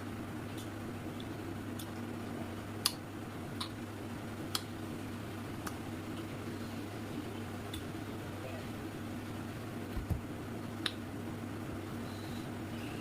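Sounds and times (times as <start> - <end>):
steady low hum: 0.0 - 13.0
eating clicks and smacks: 0.5 - 2.0, 2.8 - 3.8, 4.5 - 4.8, 7.7 - 7.9, 10.8 - 11.0.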